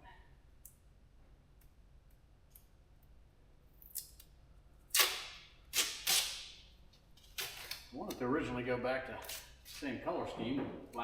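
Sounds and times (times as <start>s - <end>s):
masking tape ripping off roll: 4.9s - 7.9s.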